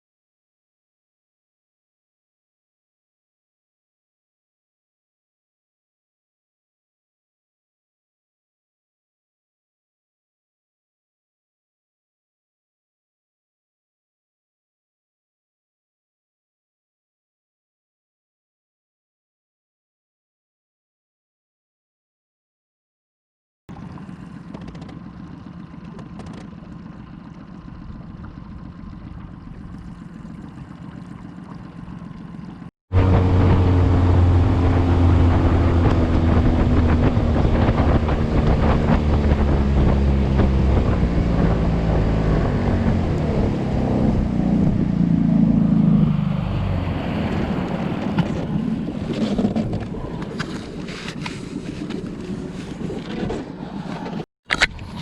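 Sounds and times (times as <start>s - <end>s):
motorboat engine running: 23.7s - 55.0s
water noise: 23.7s - 55.0s
wind: 23.7s - 55.0s.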